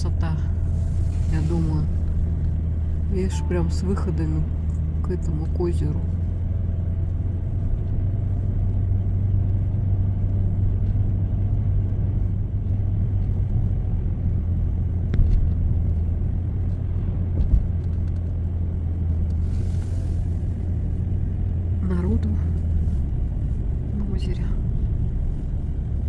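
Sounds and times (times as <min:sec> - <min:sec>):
car engine and tyre noise: 0:00.0 - 0:26.0.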